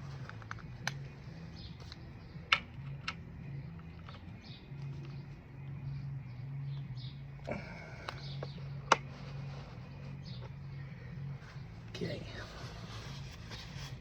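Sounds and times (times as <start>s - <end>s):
low wavering hum: 0.0s - 14.0s
objects being handled clicks: 1.8s - 5.2s.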